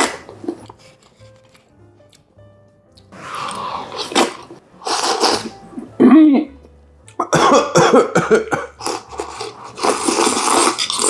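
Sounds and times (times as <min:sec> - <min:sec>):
person coughing: 0:07.2 - 0:08.8.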